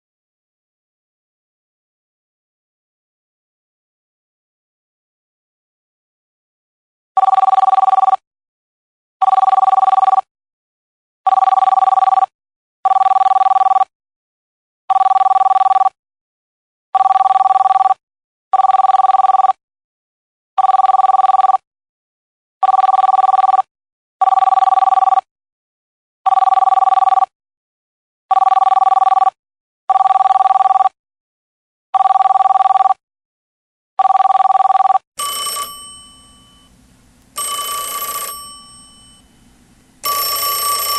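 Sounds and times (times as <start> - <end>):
telephone ringing trill: 7.2 - 8.2, 9.2 - 10.3, 11.3 - 12.3, 12.9 - 13.9, 14.9 - 16.0, 17.0 - 18.0, 18.6 - 19.6, 20.6 - 21.6, 22.6 - 23.6, 24.2 - 25.2, 26.3 - 27.3, 28.3 - 29.3, 29.9 - 30.9, 32.0 - 33.0, 34.0 - 36.8, 37.4 - 40.9.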